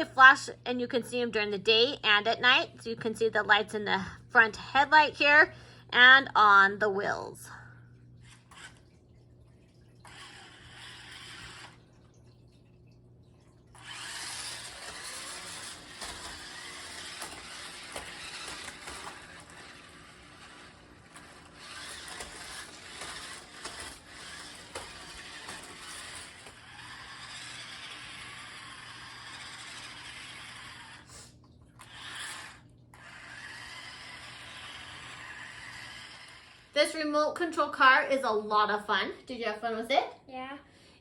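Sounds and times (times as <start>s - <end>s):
toy car electric motors running: 8.2s - 8.9s, 10.0s - 11.9s, 13.7s - 38.0s.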